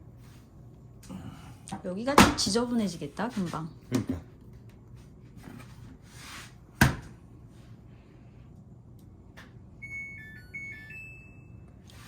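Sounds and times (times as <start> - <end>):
washing machine electronic chime: 9.7 - 12.0.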